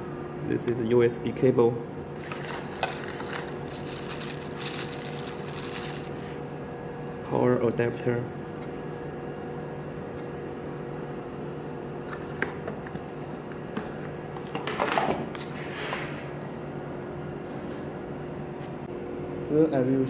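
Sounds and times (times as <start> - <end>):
steady electrical hum: 0.0 - 20.0
packaging rustle: 2.2 - 6.4.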